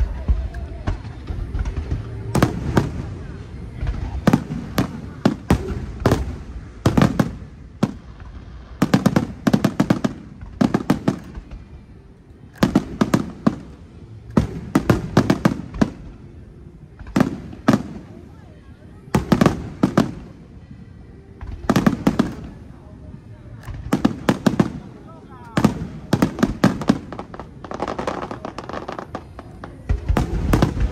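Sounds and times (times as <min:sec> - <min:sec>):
fireworks bursting with bangs: 0:00.0 - 0:30.9.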